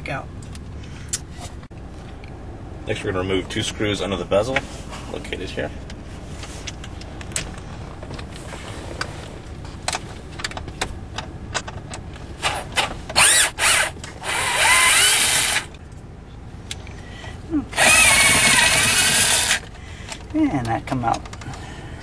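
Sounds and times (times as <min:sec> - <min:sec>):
handling clicks and knocks: 0:05.8 - 0:08.4, 0:09.0 - 0:13.2
power drill motor spinning: 0:12.4 - 0:15.7, 0:17.8 - 0:19.7.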